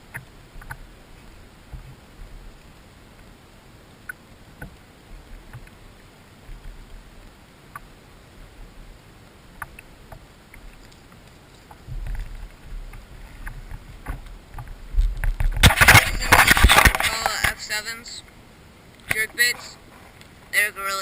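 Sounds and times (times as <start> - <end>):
faint clicks and taps: 0.1 - 0.9, 4.0 - 5.8, 6.4 - 7.9, 9.5 - 17.6.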